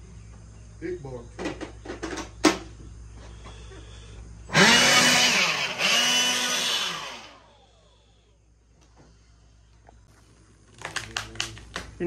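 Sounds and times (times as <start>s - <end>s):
motor spinning up and winding down: 4.5s - 8.3s.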